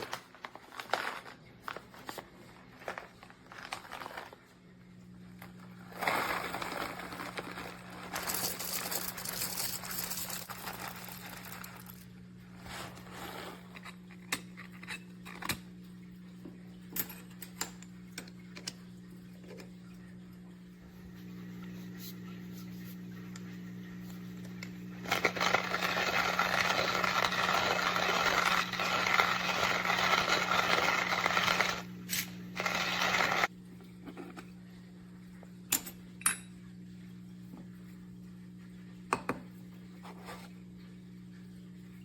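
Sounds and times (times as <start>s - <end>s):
coffee beans crunching in hand grinder: 0.0s - 4.6s, 5.6s - 12.1s, 25.0s - 33.5s
low steady hum: 0.0s - 42.0s.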